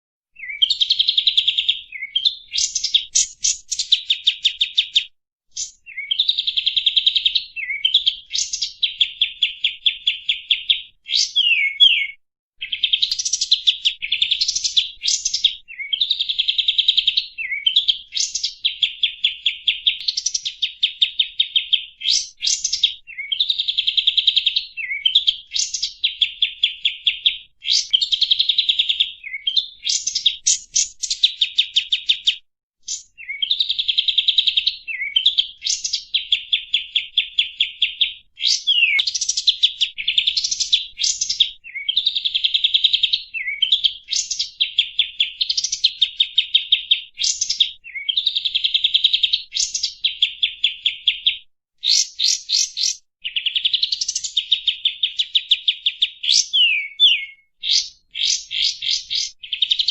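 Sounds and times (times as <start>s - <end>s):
bird singing buzzy trills: 5.6s - 16.3s, 38.5s - 39.4s, 56.3s - 59.6s.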